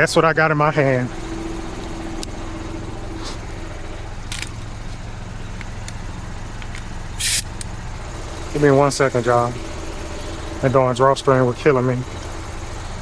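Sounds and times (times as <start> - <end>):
engine running: 0.0 - 13.0
tools clicking and rattling: 4.2 - 5.0.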